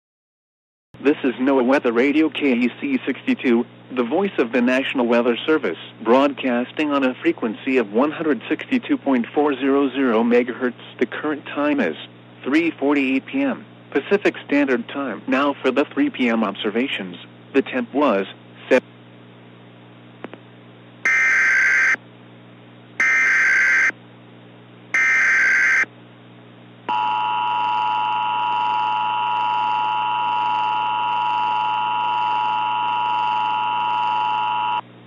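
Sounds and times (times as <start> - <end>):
raspy digital data bursts: 21.1 - 22.0, 23.0 - 23.9, 25.0 - 25.9.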